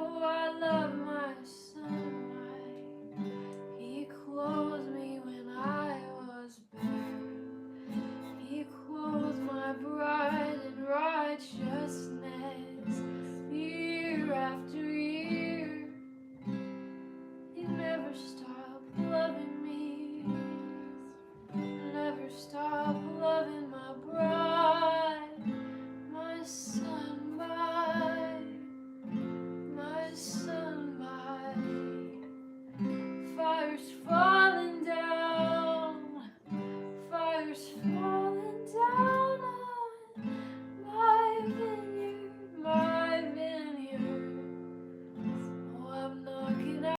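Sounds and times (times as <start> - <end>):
strummed acoustic guitar: 0.0 - 47.0
person singing: 33.2 - 36.4, 40.8 - 44.4, 45.7 - 47.0.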